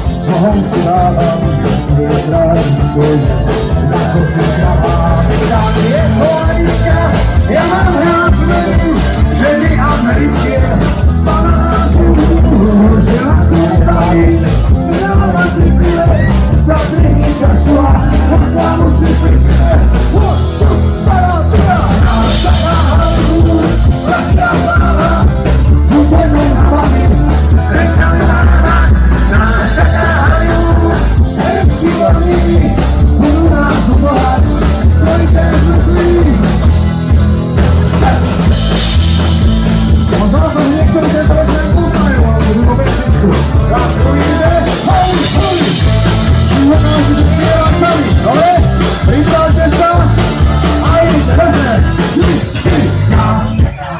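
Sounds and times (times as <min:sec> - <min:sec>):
live punk band playing: 0:00.0 - 0:53.9.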